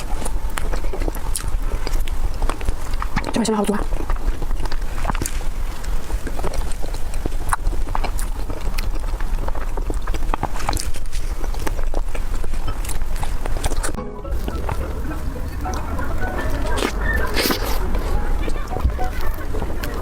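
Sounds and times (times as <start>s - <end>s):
chewing soft food: 0.0s - 20.0s
wet mouth clicks: 16.7s - 18.6s.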